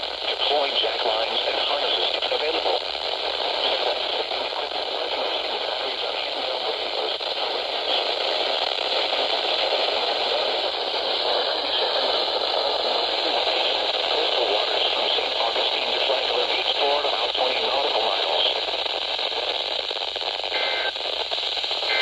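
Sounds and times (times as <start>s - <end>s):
radio static hiss: 0.0s - 22.0s.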